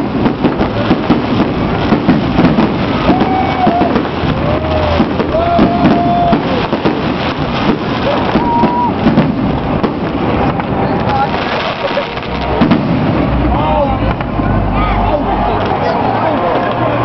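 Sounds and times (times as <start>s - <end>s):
fireworks bangs and crackles: 0.0s - 17.0s
low rumble: 0.0s - 17.0s
crowd calling out: 2.5s - 9.3s, 11.0s - 17.0s.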